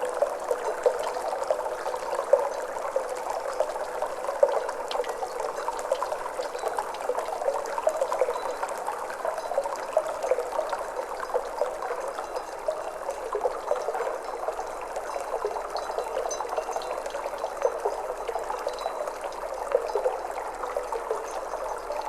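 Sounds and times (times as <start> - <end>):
water trickling and babbling: 0.0 - 22.0.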